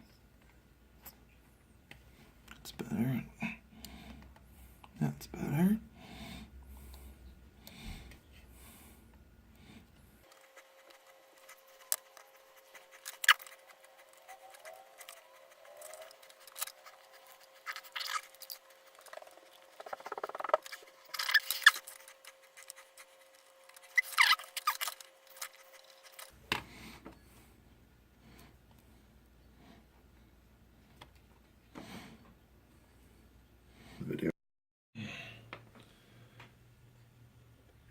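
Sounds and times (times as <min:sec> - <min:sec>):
tools clicking and scratching: 0:10.2 - 0:26.4.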